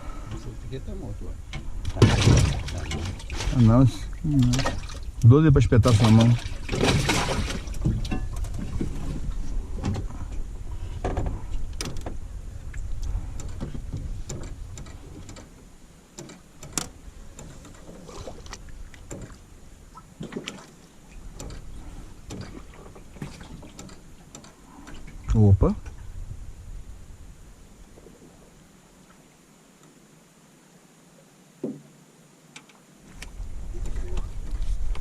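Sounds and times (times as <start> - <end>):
low rumble: 25.1 - 28.6.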